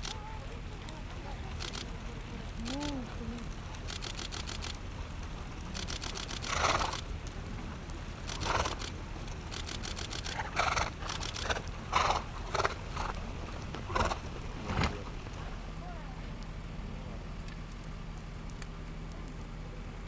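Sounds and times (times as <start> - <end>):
camera shutter clicks: 1.6 - 1.9, 3.8 - 4.8, 5.8 - 7.0, 8.3 - 11.6
horses snorting: 2.5 - 15.8
steady low rumble: 6.6 - 17.5.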